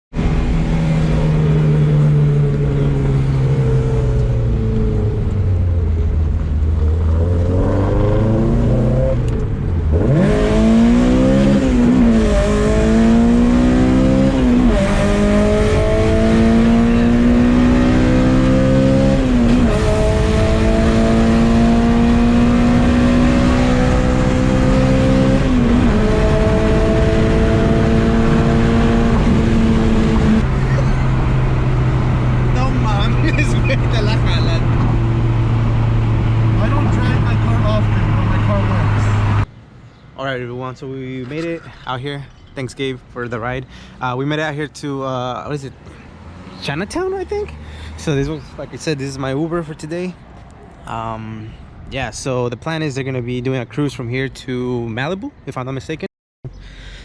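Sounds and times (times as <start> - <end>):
sports car engine accelerating: 0.2 - 39.5.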